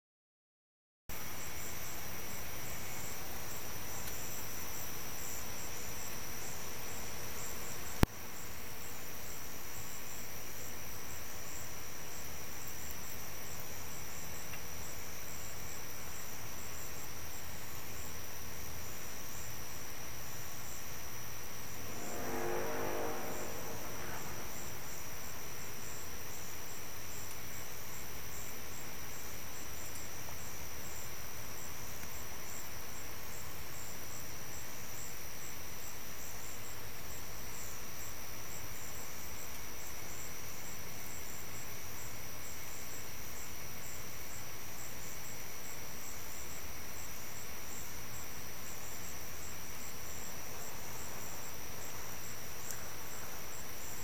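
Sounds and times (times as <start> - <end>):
crickets chirping: 1.1 - 54.0
distant low horn: 21.6 - 25.8.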